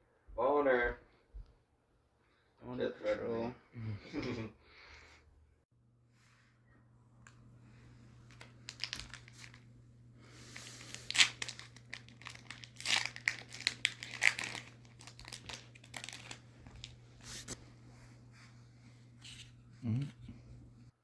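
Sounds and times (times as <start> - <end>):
foil wrapper crinkling and tearing: 8.2 - 17.6.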